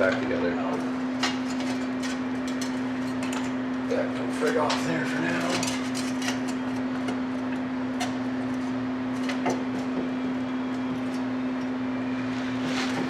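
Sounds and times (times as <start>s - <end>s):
electrical hum: 0.0s - 13.0s.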